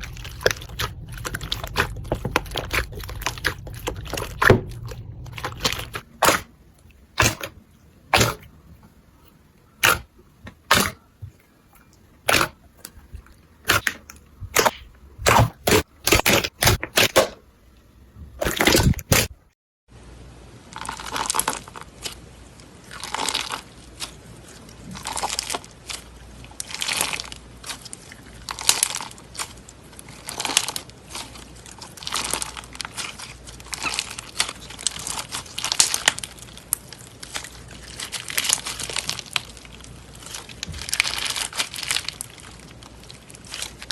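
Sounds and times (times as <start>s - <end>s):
crunchy slime crackling: 0.0s - 17.4s, 20.7s - 43.9s.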